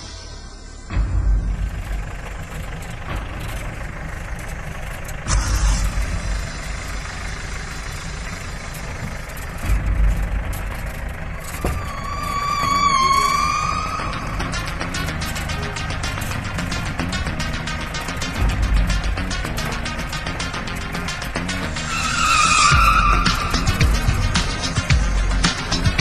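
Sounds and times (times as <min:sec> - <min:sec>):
vehicle driving off-road: 0:00.0 - 0:26.0
wavering high tone: 0:11.4 - 0:18.1.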